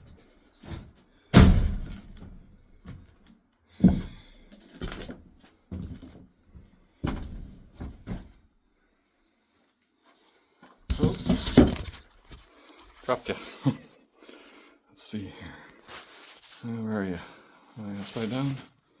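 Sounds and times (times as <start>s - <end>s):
irregular knocks and thuds: 0.6s - 8.4s.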